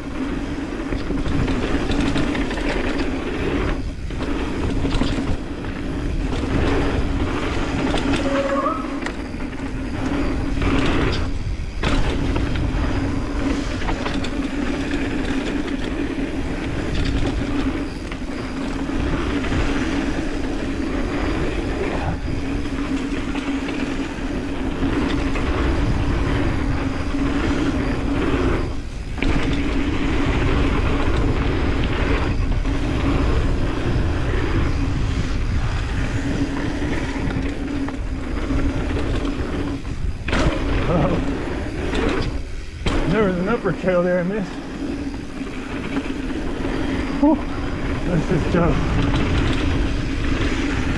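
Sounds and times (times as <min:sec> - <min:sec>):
bike rattling: 0:00.0 - 0:50.9
tyres rolling on dirt: 0:00.0 - 0:50.9
wind on microphone: 0:00.0 - 0:50.9.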